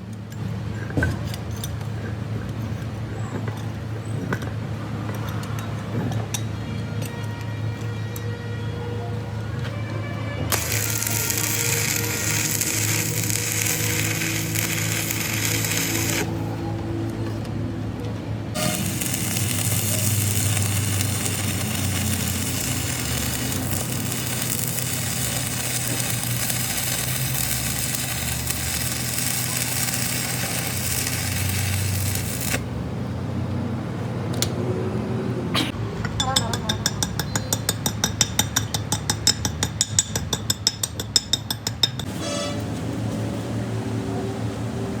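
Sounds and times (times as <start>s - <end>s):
machine hum: 10.5s - 16.6s, 18.5s - 32.8s.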